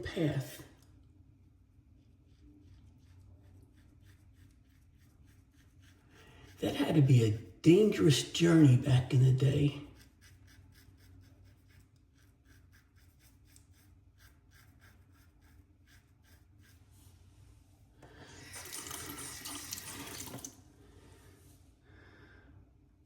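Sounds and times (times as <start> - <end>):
razor scraping stubble: 2.2 - 16.8
tap running: 18.0 - 20.6.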